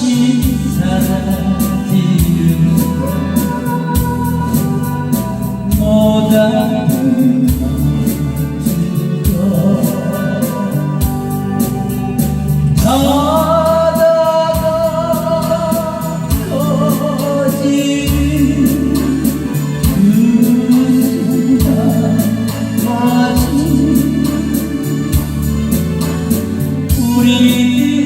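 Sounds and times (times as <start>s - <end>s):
backing music with steady beat: 0.0s - 28.0s
person singing pop song: 0.0s - 28.0s.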